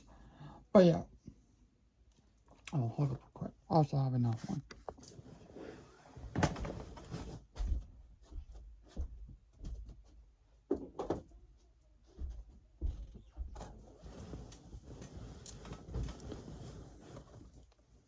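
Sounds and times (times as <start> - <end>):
rummaging knocks and rustles: 4.8 - 7.9, 13.4 - 18.0.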